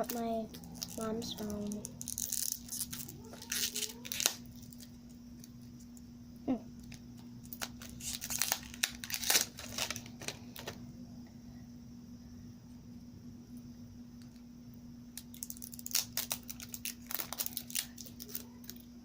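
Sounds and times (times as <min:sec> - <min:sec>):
plastic packaging crinkling and tearing: 0:00.0 - 0:05.7, 0:06.8 - 0:10.8, 0:15.2 - 0:18.9
faint steady hum: 0:00.0 - 0:19.0.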